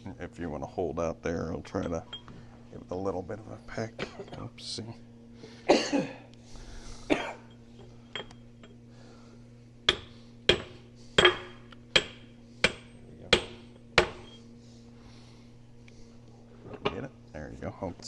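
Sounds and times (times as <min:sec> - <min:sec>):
hammer striking steel: 0:09.9 - 0:14.4.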